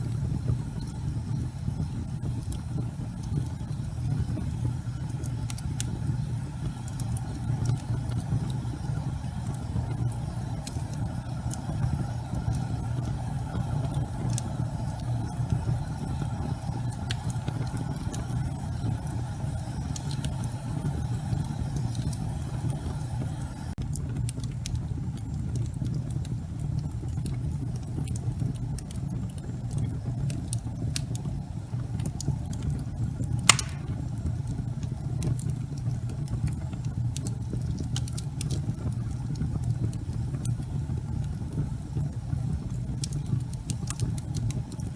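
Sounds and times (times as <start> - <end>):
wood crackling and popping: 0.0 - 15.8, 33.5 - 34.2, 36.4 - 41.6, 42.7 - 44.9
fire rumbling: 0.0 - 44.9.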